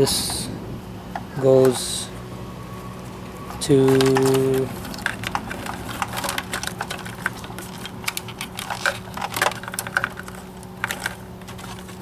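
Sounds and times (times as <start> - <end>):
faint steady hum: 0.0 - 12.0
plastic connectors clicking: 3.6 - 12.0.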